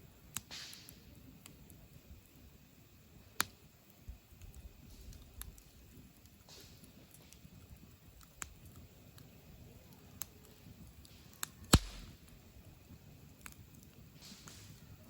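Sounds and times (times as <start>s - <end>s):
campfire crackling: 0.0s - 15.0s.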